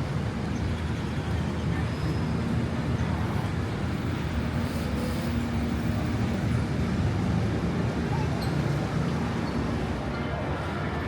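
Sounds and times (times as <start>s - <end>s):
shopping mall ambience rumble: 0.0s - 11.0s.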